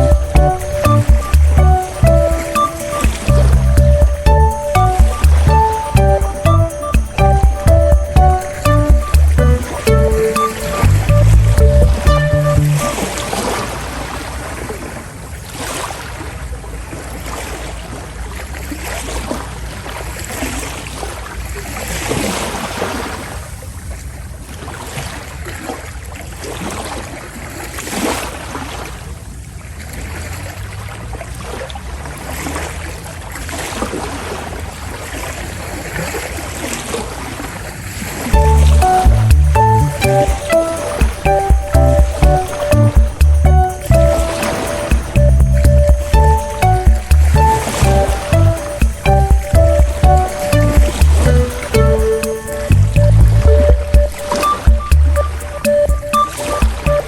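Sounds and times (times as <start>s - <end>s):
low engine rumble: 0.0s - 2.4s, 38.4s - 40.4s, 41.2s - 44.3s, 52.7s - 54.1s
water splashing along hull: 0.0s - 57.0s.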